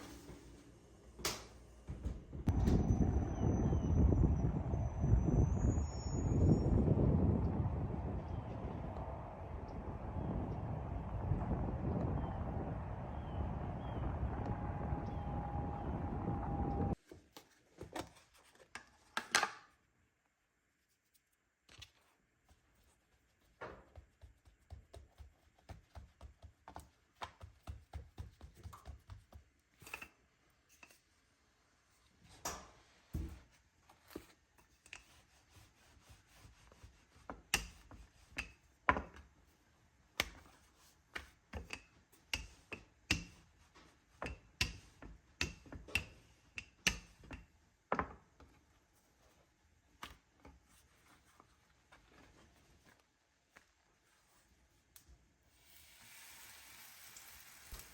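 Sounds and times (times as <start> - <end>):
kitchen utensils tapping and knocking: 41.6 - 43.4, 44.2 - 48.2.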